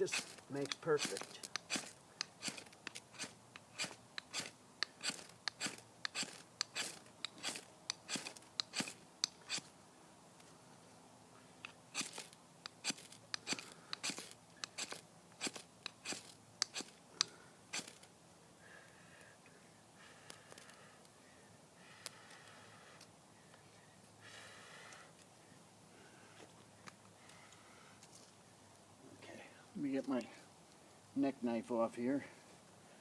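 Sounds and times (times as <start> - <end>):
knife scraping ferro rod: 0.0 - 9.7, 11.9 - 17.0.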